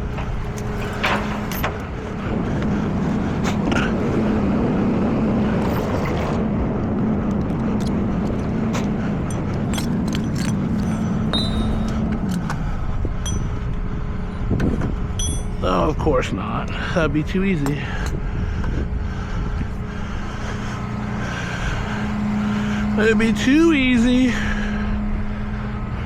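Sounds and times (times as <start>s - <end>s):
vehicle engine running: 0.0s - 26.0s
clicks and rattles: 7.3s - 12.6s.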